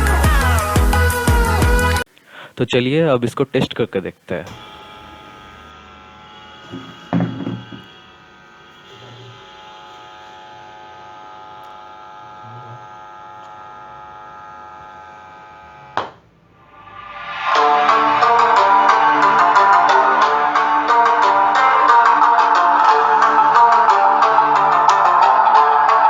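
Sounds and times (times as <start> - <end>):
mains hum from speakers: 0.0 - 16.6
thump: 6.7 - 7.9.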